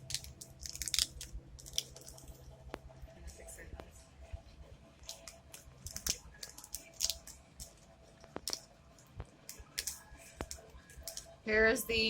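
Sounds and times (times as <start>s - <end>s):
foil wrapper crinkling: 0.0s - 2.4s, 5.0s - 8.7s.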